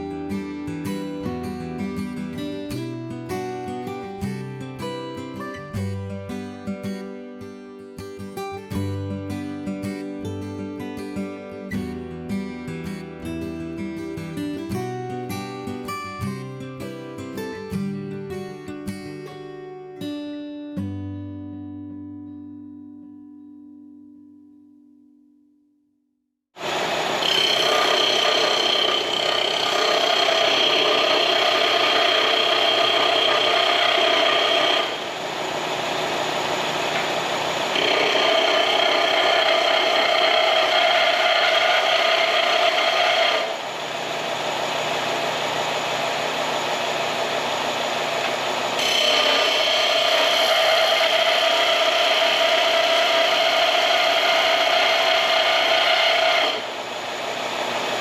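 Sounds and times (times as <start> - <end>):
angle grinder grinding steel: 26.6 - 58.0.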